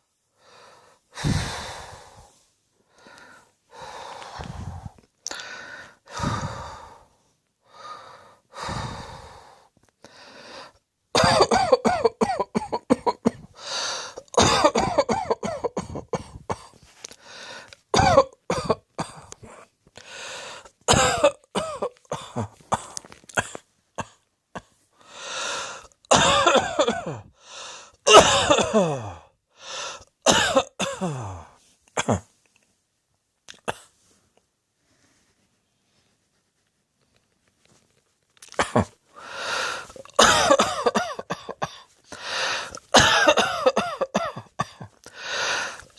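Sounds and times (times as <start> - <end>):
person breathing: 0.3 - 10.8, 13.5 - 14.3, 16.3 - 17.8, 19.4 - 20.8, 24.9 - 26.0, 27.3 - 28.0, 29.5 - 30.1, 39.1 - 40.2, 42.0 - 42.9, 45.0 - 45.9
person coughing: 11.2 - 13.5, 14.2 - 16.8, 18.0 - 19.7, 20.9 - 24.8, 26.1 - 27.3, 28.1 - 29.3, 30.3 - 32.3, 38.4 - 39.0, 40.0 - 41.9, 42.5 - 45.8.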